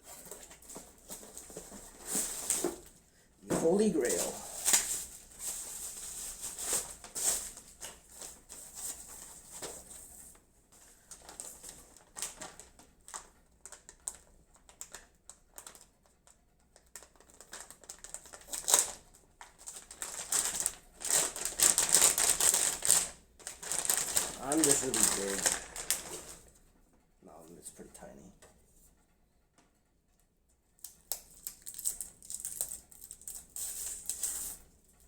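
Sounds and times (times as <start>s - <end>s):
packaging crinkling: 3.6s - 9.4s, 11.1s - 15.9s, 16.8s - 26.5s, 30.8s - 34.6s.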